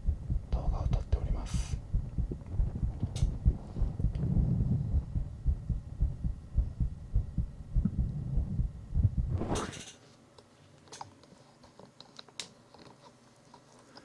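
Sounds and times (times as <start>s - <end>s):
heartbeat thumps: 0.0s - 9.6s.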